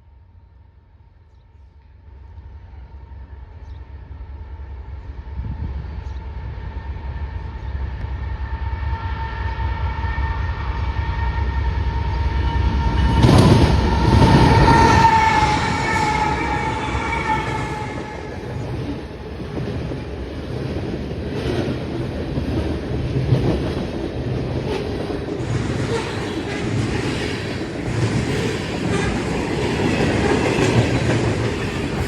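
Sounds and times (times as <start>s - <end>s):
train rumble: 0.7s - 32.0s
steady high tone: 12.2s - 19.0s.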